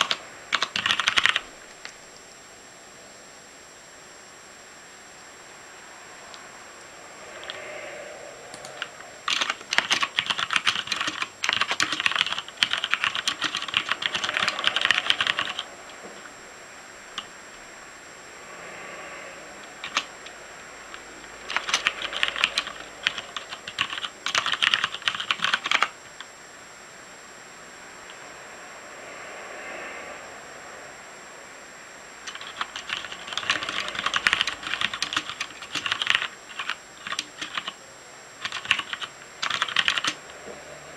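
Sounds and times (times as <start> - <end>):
mechanical keyboard typing: 0.0 - 2.0, 8.5 - 16.3, 19.7 - 20.1, 20.9 - 26.0, 32.3 - 37.8, 38.4 - 40.3.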